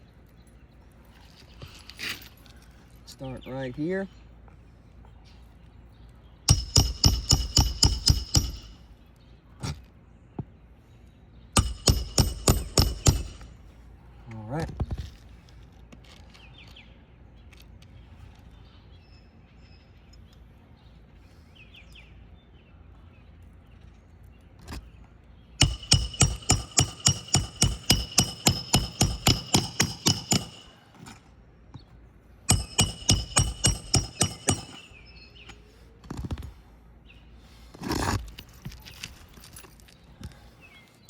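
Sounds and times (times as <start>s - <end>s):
hammer striking nails: 6.5s - 8.8s, 11.6s - 13.6s, 25.6s - 31.2s, 32.5s - 35.0s.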